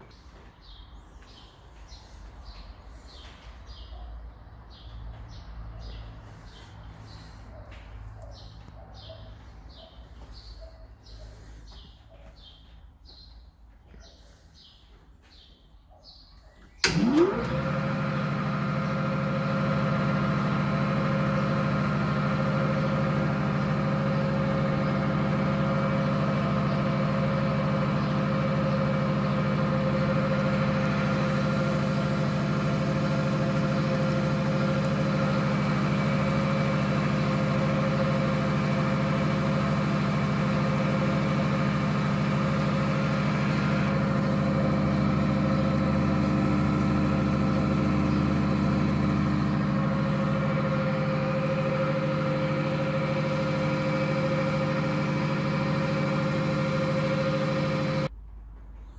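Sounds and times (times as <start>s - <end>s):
lathe running with hum and whine: 16.8s - 58.1s.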